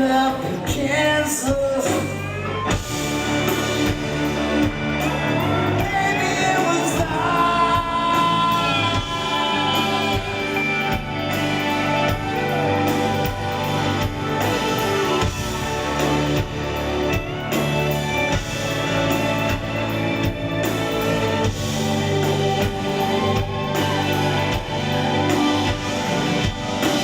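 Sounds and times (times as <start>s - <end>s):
live rock band playing: 0.0s - 27.0s
person singing: 5.0s - 16.5s.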